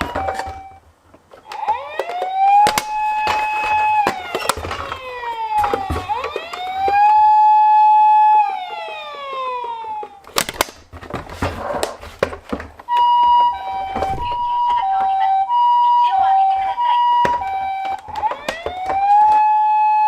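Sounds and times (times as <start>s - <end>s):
toy siren wailing: 0.0s - 0.8s, 1.4s - 10.3s, 12.9s - 20.0s
two-tone hi-lo siren: 1.4s - 10.3s, 12.9s - 20.0s.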